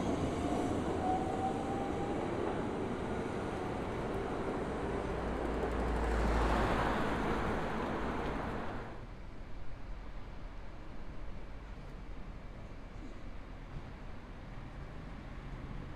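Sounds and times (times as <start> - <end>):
road traffic: 0.0 - 9.0
train running along street: 0.0 - 15.9.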